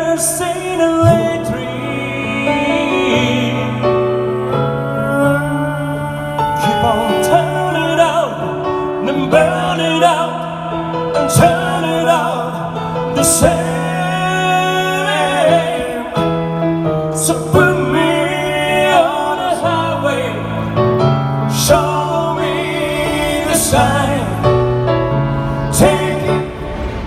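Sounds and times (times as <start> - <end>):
live band playing a slow ballad: 0.0 - 27.0.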